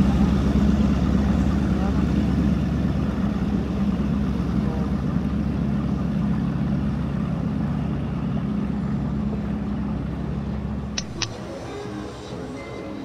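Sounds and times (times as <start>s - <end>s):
motorboat engine humming: 0.0s - 13.0s
sharp clicks: 11.0s - 11.4s.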